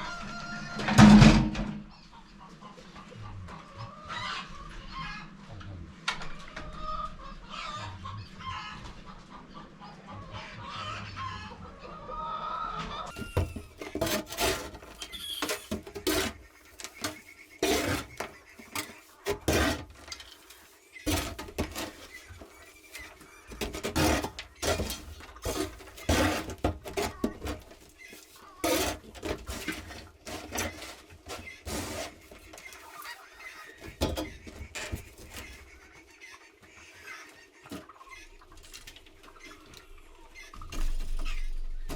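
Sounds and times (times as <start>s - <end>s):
chickens clucking: 0.0s - 41.9s
sharp knocks and scrapes: 0.6s - 1.9s, 13.1s - 35.9s.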